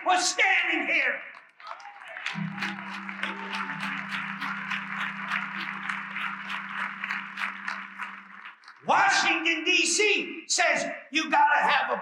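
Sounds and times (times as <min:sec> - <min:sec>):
audience applauding: 0:01.2 - 0:09.5.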